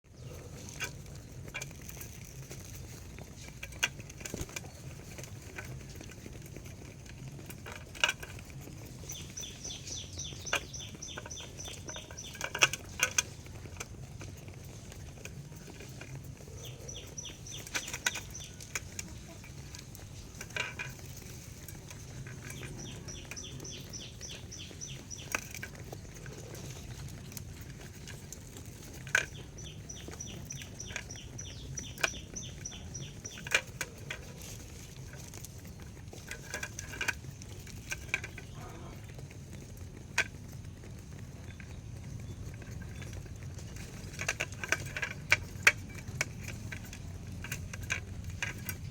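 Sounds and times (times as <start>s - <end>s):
rapid high chirping: 22.4s - 25.4s, 29.3s - 33.5s.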